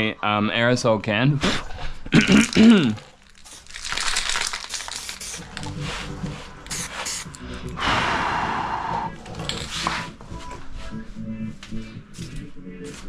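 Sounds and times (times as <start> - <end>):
aerosol can spraying: 4.7 - 7.4.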